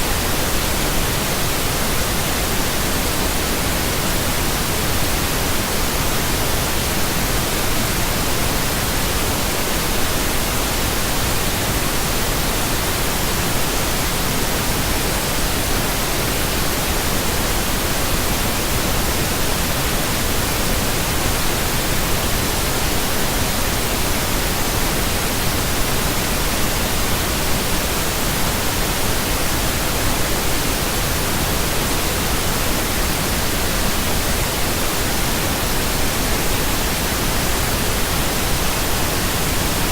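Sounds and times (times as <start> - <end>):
pink noise hiss: 0.0 - 39.9.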